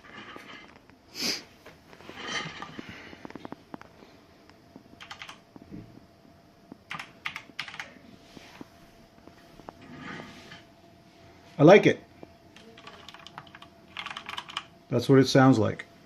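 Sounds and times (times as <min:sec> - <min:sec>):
typing on mechanical keyboard: 0:05.0 - 0:05.4, 0:06.9 - 0:07.9, 0:12.6 - 0:14.7.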